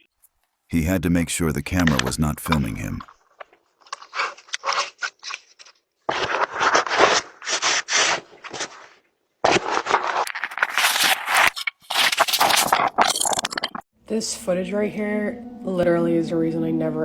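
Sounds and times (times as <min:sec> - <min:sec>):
scraping and rubbing on microphone: 0:01.8 - 0:13.8.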